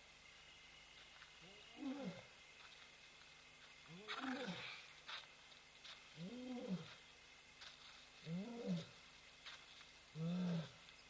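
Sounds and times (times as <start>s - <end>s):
lion moaning calls: 1.7s - 2.3s, 4.0s - 4.8s.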